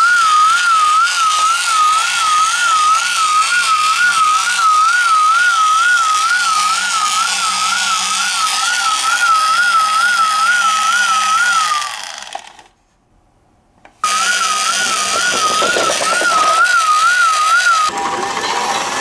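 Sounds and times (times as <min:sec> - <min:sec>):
toy siren warbling: 0:14.2 - 0:17.9.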